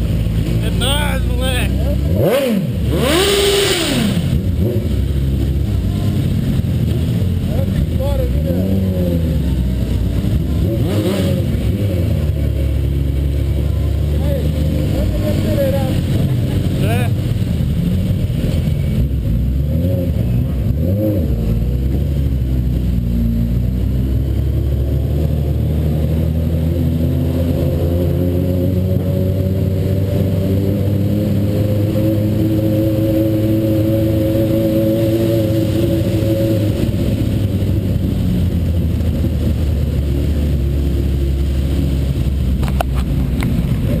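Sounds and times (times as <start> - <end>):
motorcycle engine running: 0.0 - 44.0.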